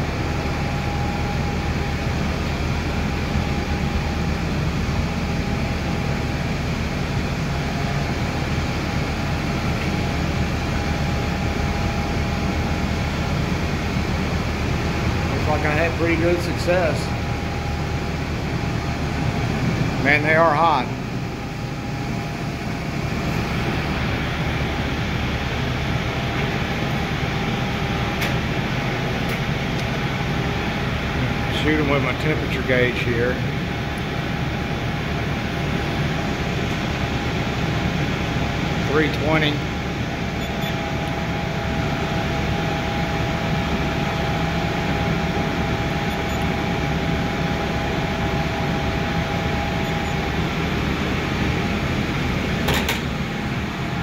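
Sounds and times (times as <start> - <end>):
blower whirring: 0.0 - 54.0
large fan humming: 0.0 - 54.0
whining tones: 39.6 - 52.6.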